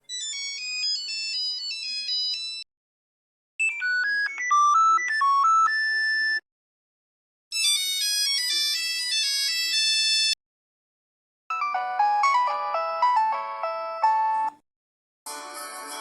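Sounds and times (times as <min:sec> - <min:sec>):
mobile phone ringtone: 0:00.1 - 0:02.7, 0:03.6 - 0:06.4, 0:07.5 - 0:10.4, 0:11.5 - 0:14.6.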